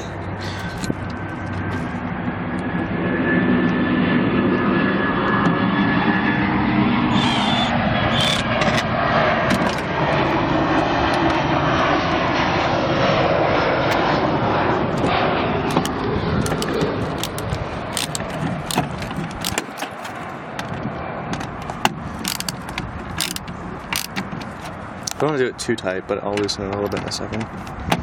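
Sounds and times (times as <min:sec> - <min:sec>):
aircraft engine rumbling overhead: 0:00.0 - 0:28.0
metal clicks and jingles: 0:15.7 - 0:20.3, 0:21.6 - 0:25.2.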